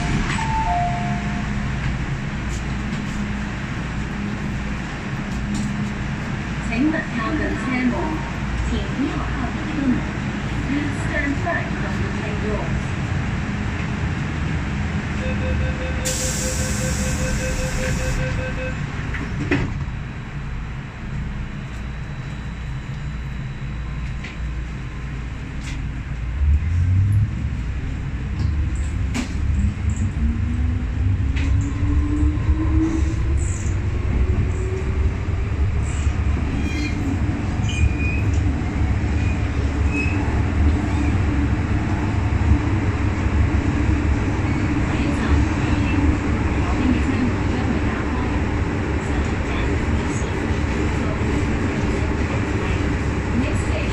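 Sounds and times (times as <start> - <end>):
train low rumble: 0.0 - 53.9
air hiss: 16.1 - 17.1
train wheels squealing: 35.9 - 38.4, 39.2 - 40.3.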